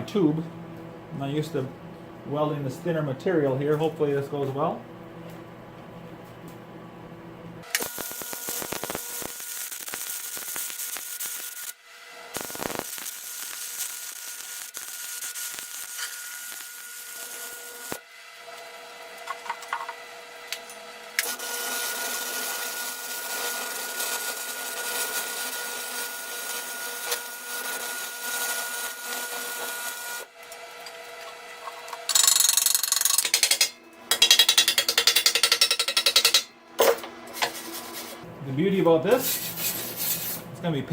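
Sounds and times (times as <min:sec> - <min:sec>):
welding arc crackling sizzle: 0:07.6 - 0:36.5, 0:37.3 - 0:40.8.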